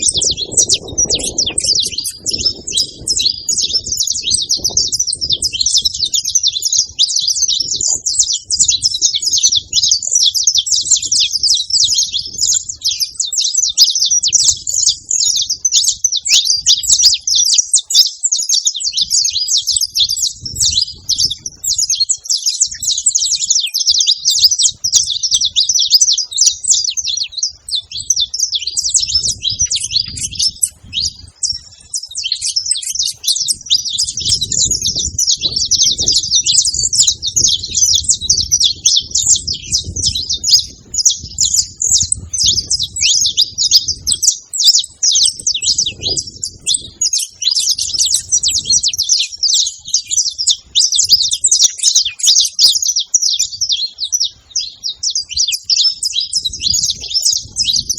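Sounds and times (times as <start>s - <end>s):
finches chirping and twittering: 0.0s - 57.9s.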